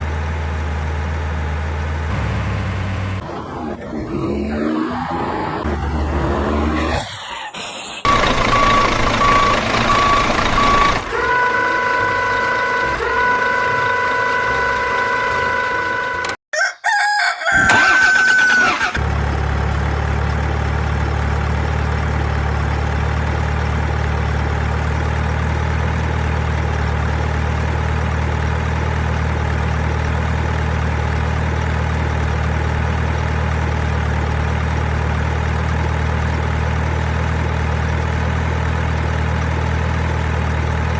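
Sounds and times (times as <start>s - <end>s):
engine idling: 8.1s - 11.2s, 18.7s - 40.9s.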